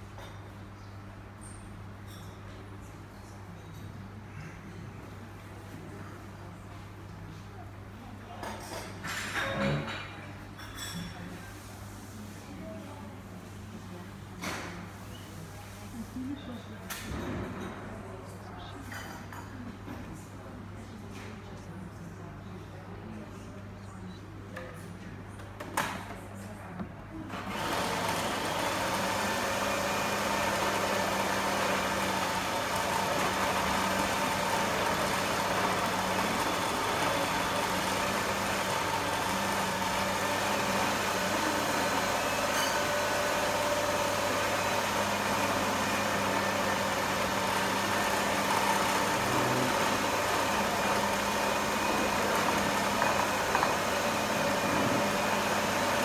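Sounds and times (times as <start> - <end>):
food processor motor running: 27.4 - 56.0.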